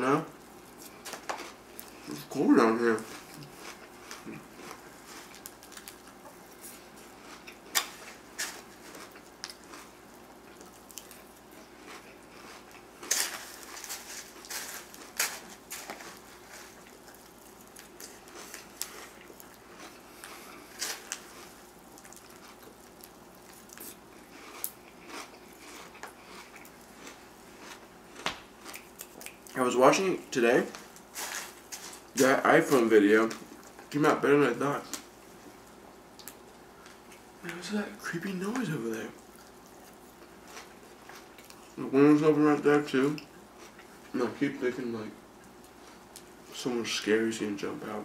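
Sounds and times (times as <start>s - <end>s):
chewing: 0.3s - 29.6s, 34.9s - 37.6s, 38.9s - 41.8s, 43.0s - 44.1s.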